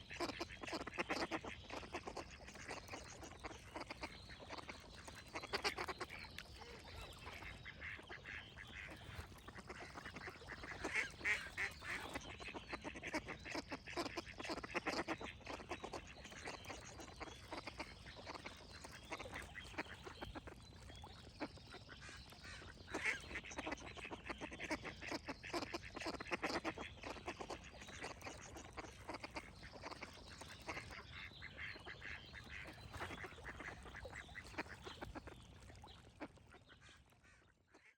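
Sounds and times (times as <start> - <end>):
ducks quacking: 0.1 - 18.4, 22.0 - 30.0.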